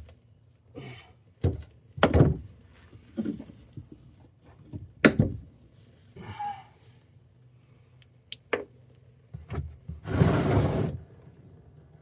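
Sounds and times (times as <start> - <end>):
rustling scrape: 10.1 - 10.9.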